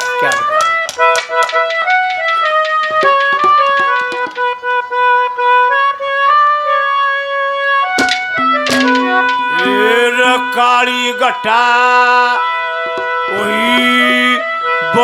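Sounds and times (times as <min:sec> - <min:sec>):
drum strokes: 0:08.0 - 0:10.0
wavering melody line: 0:08.0 - 0:10.9.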